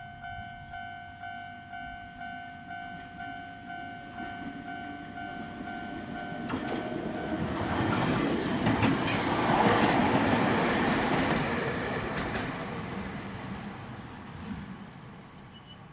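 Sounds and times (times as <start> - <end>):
level-crossing alarm ringing: 0.0 - 7.6
train wheel and rail noise: 0.0 - 15.9.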